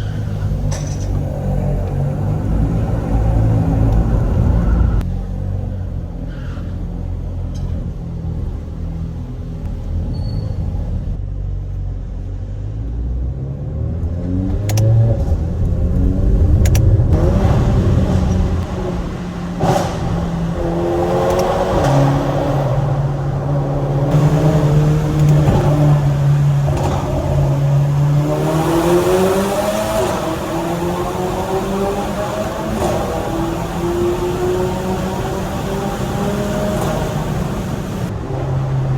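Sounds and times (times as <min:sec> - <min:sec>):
turbocharged car engine revving: 0:13.4 - 0:38.9
exhaust cracks: 0:14.5 - 0:38.2.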